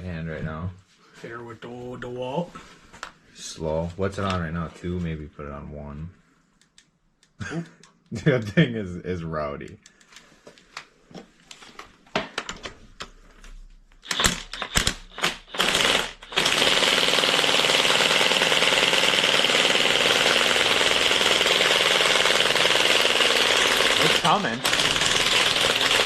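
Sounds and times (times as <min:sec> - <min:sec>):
tool clicks and clanks: 0:14.0 - 0:26.0
impact wrench hammering: 0:14.1 - 0:26.0.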